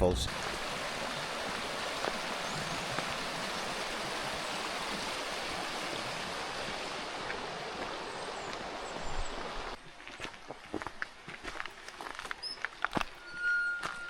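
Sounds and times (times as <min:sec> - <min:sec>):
stream flowing over rocks: 0:00.0 - 0:09.8.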